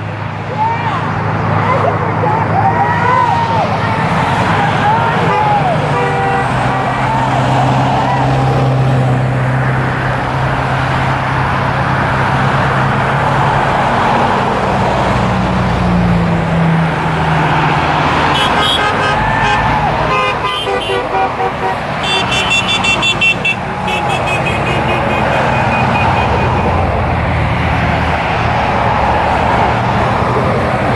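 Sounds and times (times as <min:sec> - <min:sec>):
heavy engine drone: 0:00.0 - 0:30.9
road traffic passing: 0:00.0 - 0:30.9
vehicle horn honks: 0:05.2 - 0:06.9, 0:18.3 - 0:26.8.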